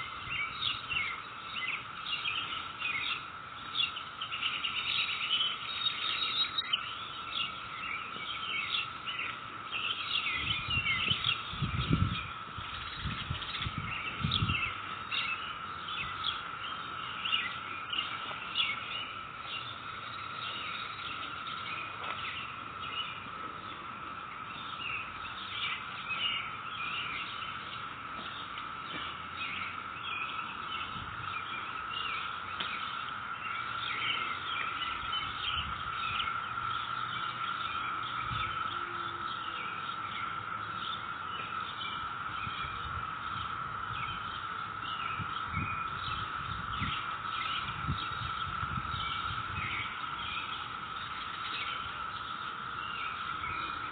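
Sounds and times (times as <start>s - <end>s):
cicada drone: 0.0s - 53.9s.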